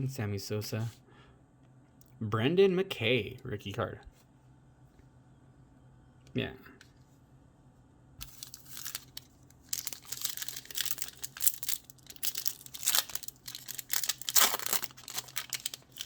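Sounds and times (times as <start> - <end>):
foil wrapper crinkling and tearing: 8.2 - 16.0.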